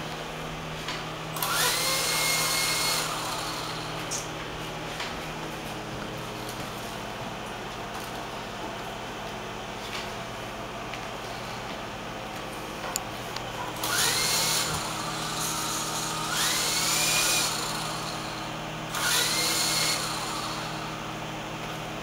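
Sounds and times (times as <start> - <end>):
electric motor whine spinning up: 1.3 - 4.3, 13.8 - 21.1.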